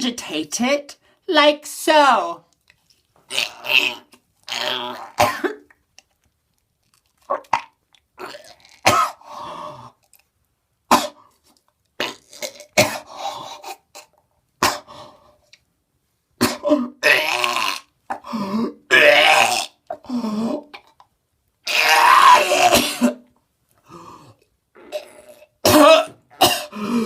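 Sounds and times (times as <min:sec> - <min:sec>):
person coughing and retching: 0:03.3 - 0:05.8, 0:07.3 - 0:09.3, 0:10.9 - 0:11.3, 0:12.0 - 0:15.0, 0:16.4 - 0:21.1, 0:21.7 - 0:23.3, 0:24.8 - 0:27.0.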